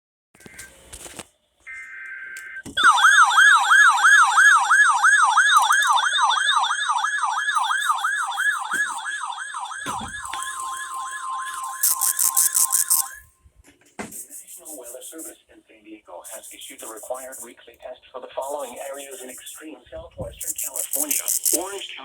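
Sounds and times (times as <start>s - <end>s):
electronic siren yelping: 1.7s - 13.3s, 20.5s - 21.8s
steady high tone: 2.4s - 13.4s, 18.4s - 19.6s, 20.4s - 21.8s
quick high-pitched pulses: 7.5s - 13.3s, 20.4s - 21.8s.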